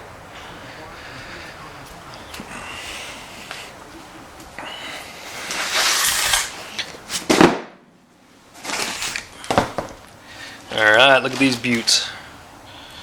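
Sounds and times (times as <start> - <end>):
sharp thump: 7.2 - 7.8
rustling and handling noises: 8.2 - 10.2.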